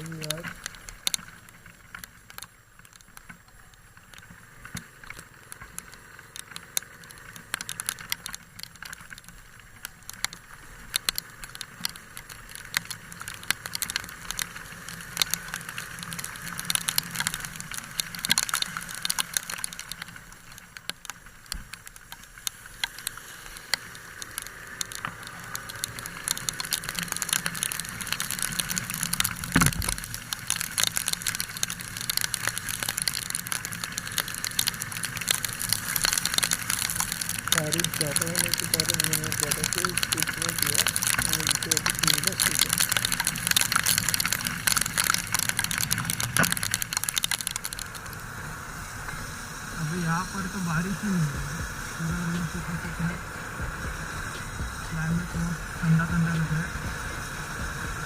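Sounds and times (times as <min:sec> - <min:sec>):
heavy rain pattering: 0:00.0 - 0:58.0.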